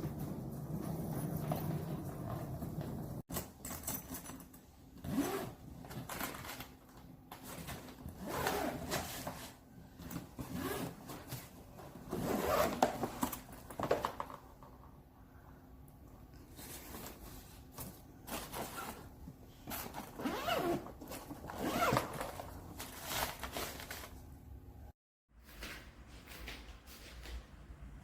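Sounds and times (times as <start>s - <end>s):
suitcase zipper being pulled: 8.2s - 9.3s, 12.1s - 13.0s, 19.7s - 23.7s.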